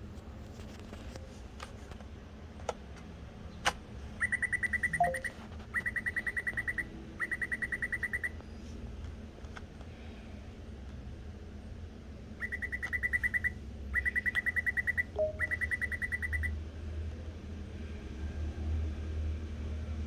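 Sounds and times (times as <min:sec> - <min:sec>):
high electronic chirps: 0:04.3 - 0:05.4, 0:14.6 - 0:16.5
low electronic blip: 0:05.0 - 0:05.3.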